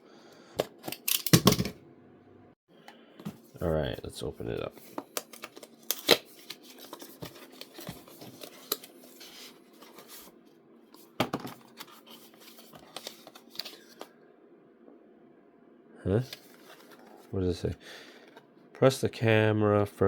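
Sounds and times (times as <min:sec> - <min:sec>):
packaging rustling and scraping: 0:03.3 - 0:14.1, 0:16.2 - 0:17.3.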